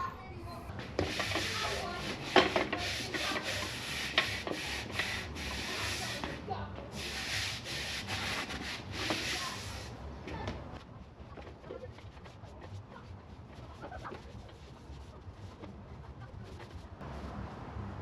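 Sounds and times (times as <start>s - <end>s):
sandpaper rasping: 1.0s - 10.0s.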